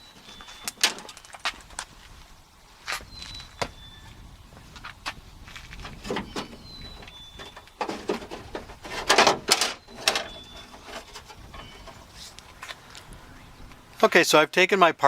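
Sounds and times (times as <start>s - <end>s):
metal parts scraping and clattering: 6.0s - 12.3s
thin squeak: 9.6s - 12.4s.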